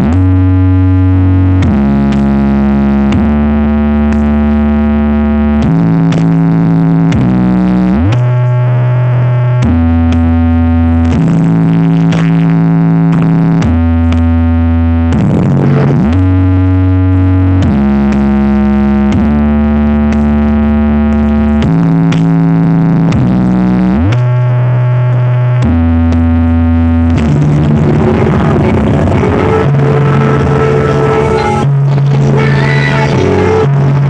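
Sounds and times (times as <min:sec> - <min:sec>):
electronic music with synth bass: 0:00.0 - 0:34.0.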